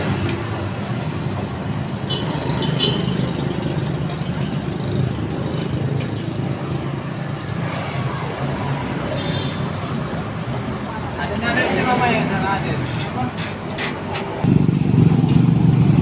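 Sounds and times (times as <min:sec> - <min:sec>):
engine running steadily: 0:13.3 - 0:16.0.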